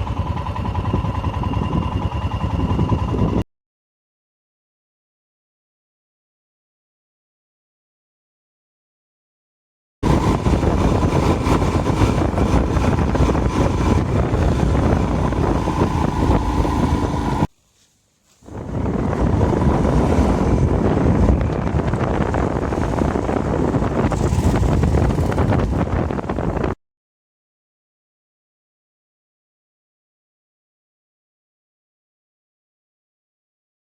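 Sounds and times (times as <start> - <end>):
strong wind buffeting microphone: 0.0 - 3.4, 10.0 - 17.5, 18.4 - 26.8.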